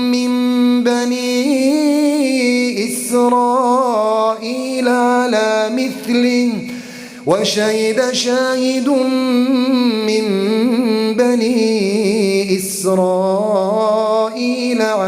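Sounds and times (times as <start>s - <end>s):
man chanting melodically: 0.0s - 15.0s
quick breath: 6.6s - 7.3s.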